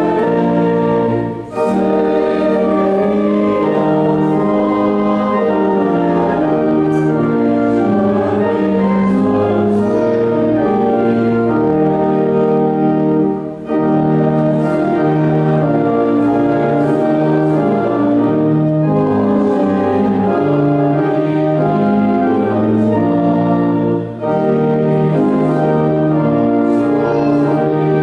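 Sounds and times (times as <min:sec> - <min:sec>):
voices singing: 0:00.0 - 0:12.5, 0:25.0 - 0:28.0
organ playing hymn: 0:00.0 - 0:28.0.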